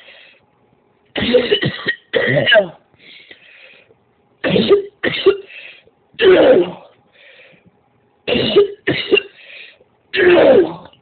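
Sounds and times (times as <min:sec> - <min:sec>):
faint breaths: 0:00.0 - 0:00.6, 0:02.9 - 0:04.0, 0:05.4 - 0:06.0, 0:07.0 - 0:07.8, 0:09.3 - 0:10.0
woman coughing: 0:01.2 - 0:02.8, 0:04.4 - 0:05.5, 0:06.2 - 0:06.9, 0:08.3 - 0:09.4, 0:10.2 - 0:10.9.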